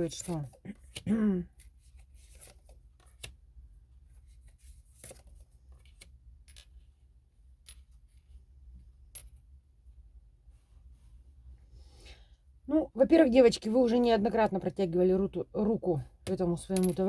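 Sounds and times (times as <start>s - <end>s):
low steady hum: 0.0s - 17.0s
cards clicking and snapping: 2.4s - 3.4s.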